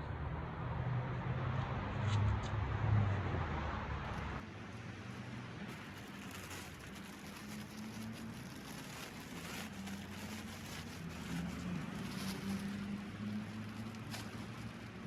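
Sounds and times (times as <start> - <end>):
scratchy rustling: 5.7 - 15.0.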